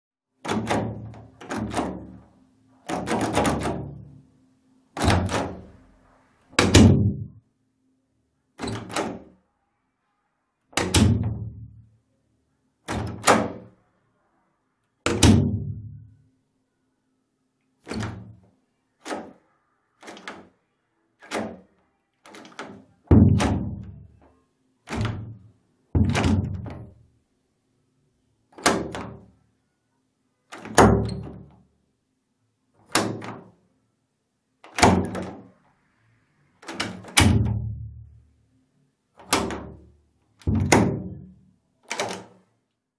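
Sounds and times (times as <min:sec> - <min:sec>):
door thunk: 0:00.4 - 0:02.2, 0:02.9 - 0:04.0, 0:05.0 - 0:05.7, 0:06.6 - 0:07.3, 0:10.8 - 0:11.6, 0:12.9 - 0:13.7, 0:15.1 - 0:15.9, 0:17.9 - 0:18.4, 0:22.3 - 0:24.0, 0:24.9 - 0:25.4, 0:26.0 - 0:27.0, 0:28.6 - 0:29.2, 0:34.7 - 0:35.5, 0:36.6 - 0:37.8, 0:39.2 - 0:41.2
door knob and latch clicking: 0:00.4 - 0:02.3, 0:02.9 - 0:04.2, 0:05.0 - 0:05.8, 0:08.6 - 0:09.3, 0:12.9 - 0:13.7, 0:17.8 - 0:19.4, 0:20.0 - 0:20.6, 0:21.2 - 0:24.0, 0:24.9 - 0:25.4, 0:28.6 - 0:29.3, 0:30.5 - 0:31.6, 0:32.9 - 0:33.5, 0:34.7 - 0:35.5, 0:36.6 - 0:37.7, 0:39.2 - 0:42.5.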